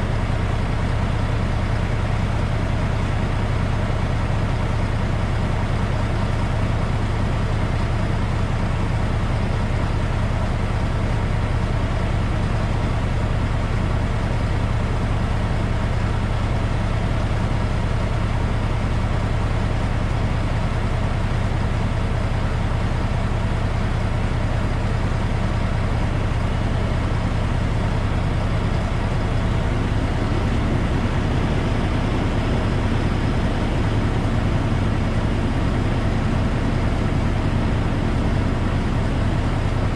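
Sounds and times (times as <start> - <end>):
diesel truck engine droning: 0.0 - 39.9.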